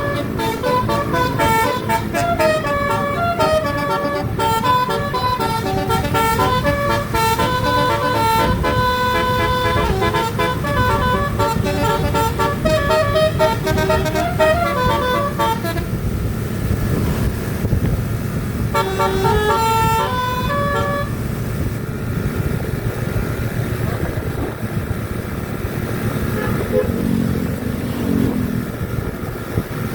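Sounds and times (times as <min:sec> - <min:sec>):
multi-tone bus horn tune: 0:00.0 - 0:16.1, 0:18.7 - 0:21.3, 0:26.3 - 0:27.2
low engine rumble: 0:00.0 - 0:29.9.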